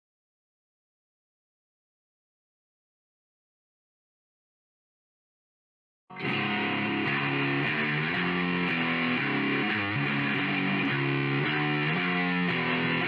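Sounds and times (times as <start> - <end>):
distorted electric guitar riff: 6.1 - 13.0.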